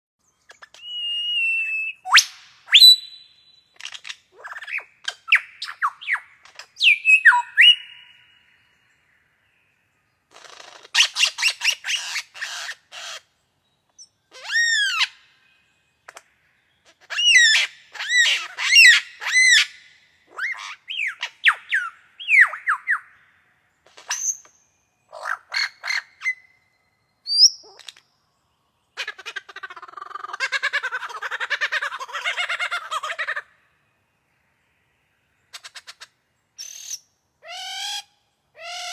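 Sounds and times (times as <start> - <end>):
bird calling: 0.4 - 9.1.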